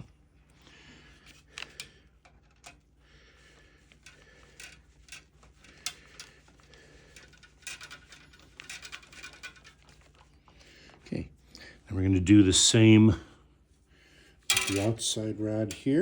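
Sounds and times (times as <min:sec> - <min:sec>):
small metal parts clicking: 0:04.0 - 0:10.2, 0:14.5 - 0:15.1.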